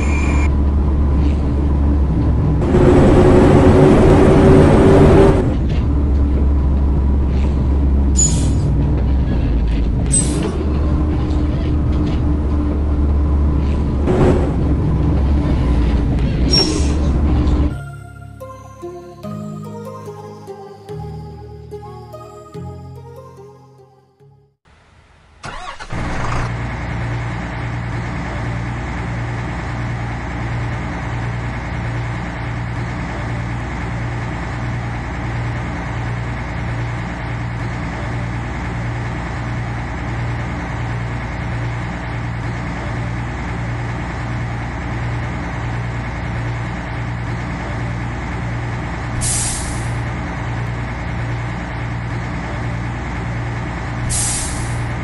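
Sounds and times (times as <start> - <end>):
engine cranking and idling: 25.4 - 55.0
short hiss of air: 54.1 - 54.8.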